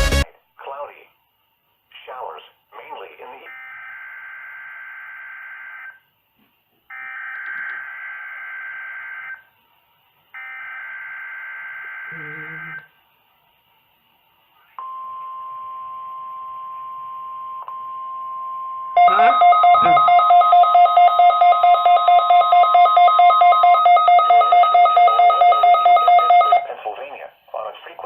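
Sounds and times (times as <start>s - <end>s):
steady warning alarm tone: 3.4s - 6.0s, 6.9s - 9.5s, 10.3s - 13.0s, 14.8s - 26.7s
pulsing two-tone beep: 14.8s - 26.6s.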